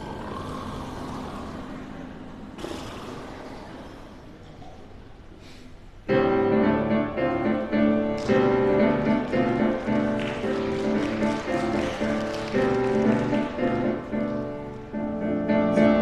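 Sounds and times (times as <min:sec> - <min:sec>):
piano playing rhythmic chords: 0:06.1 - 0:16.0.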